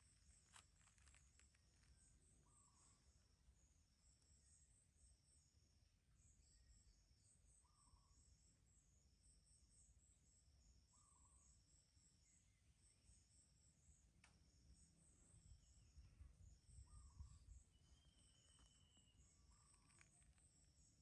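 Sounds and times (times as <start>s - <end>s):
high-pitched insect chirping: 12.2s - 21.0s
click: 14.2s - 14.4s, 19.6s - 20.5s.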